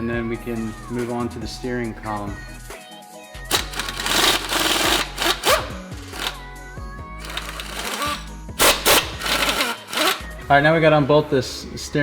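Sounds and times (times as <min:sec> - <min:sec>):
background music with beat: 0:00.0 - 0:12.0
impact wrench bursts: 0:03.5 - 0:06.5, 0:07.2 - 0:10.4.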